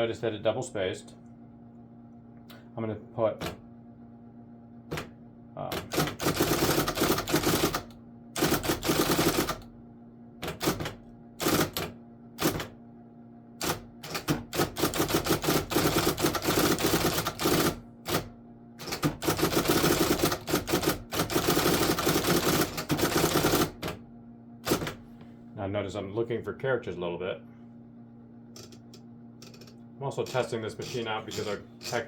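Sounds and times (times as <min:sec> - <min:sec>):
electric typewriter keystrokes: 0:03.4 - 0:03.6, 0:04.9 - 0:09.7, 0:10.4 - 0:12.8, 0:13.6 - 0:24.0, 0:24.6 - 0:25.0, 0:30.3 - 0:32.0
typewriter motor humming: 0:04.9 - 0:09.7, 0:10.4 - 0:12.8, 0:13.6 - 0:24.0, 0:24.6 - 0:25.0, 0:28.6 - 0:32.0.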